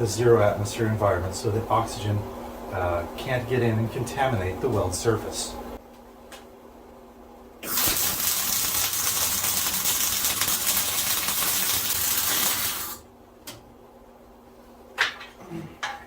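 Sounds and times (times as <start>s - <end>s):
arc welder crackling: 7.6s - 13.1s.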